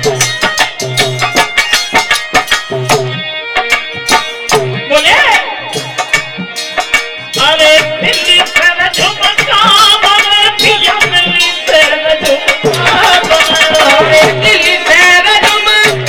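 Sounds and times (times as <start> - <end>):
hand drum beating: 0.0 - 16.0
held instrumental notes: 0.0 - 16.0
jingling percussion: 0.0 - 16.0
person singing: 4.8 - 6.1, 7.3 - 16.0.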